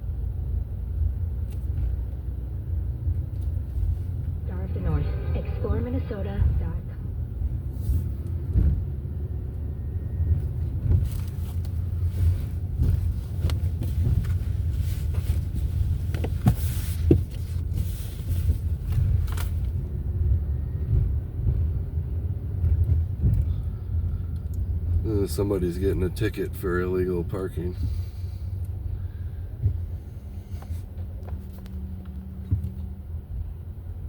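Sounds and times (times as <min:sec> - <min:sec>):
car driving rumble: 0:00.0 - 0:34.0.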